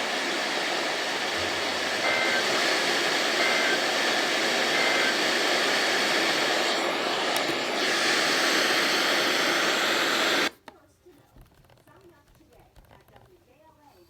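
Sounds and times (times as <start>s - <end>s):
broadcast static hiss: 0.0s - 10.5s
two-tone digital bursts: 1.4s - 6.4s.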